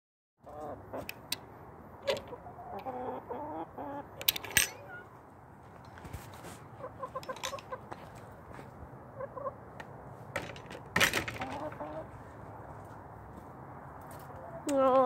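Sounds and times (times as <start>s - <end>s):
hen clucking: 0.4s - 1.2s, 2.0s - 4.2s, 6.7s - 8.0s, 9.1s - 9.7s, 11.4s - 12.3s, 14.3s - 15.0s.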